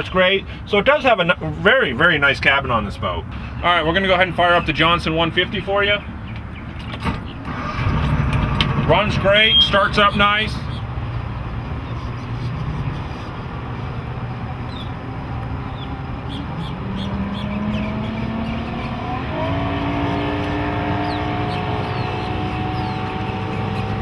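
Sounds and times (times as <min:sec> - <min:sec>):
outboard motor running: 0:07.5 - 0:10.3, 0:15.5 - 0:24.0.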